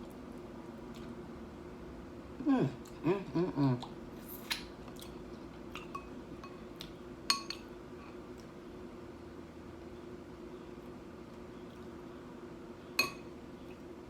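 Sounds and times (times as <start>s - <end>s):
person humming while eating: 2.4s - 4.0s
dish or glass clinking: 13.0s - 13.2s.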